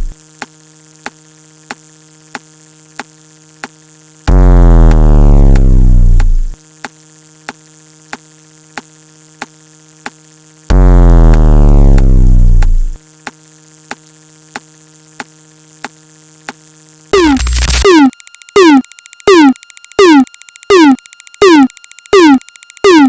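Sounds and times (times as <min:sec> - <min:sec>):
sharp electronic ticks: 0:00.0 - 0:00.5, 0:02.4 - 0:16.6, 0:17.2 - 0:23.0
buzzing hum: 0:00.0 - 0:23.0
distorted falling blast: 0:04.3 - 0:06.6, 0:17.2 - 0:17.9.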